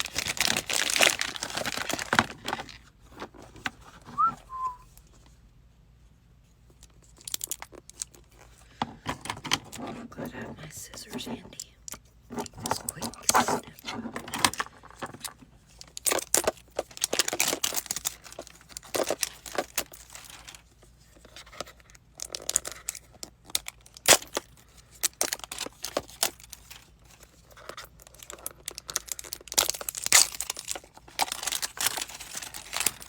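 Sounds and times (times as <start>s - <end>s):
packaging crinkling and tearing: 0.0s - 3.4s, 6.8s - 8.6s, 12.4s - 33.0s.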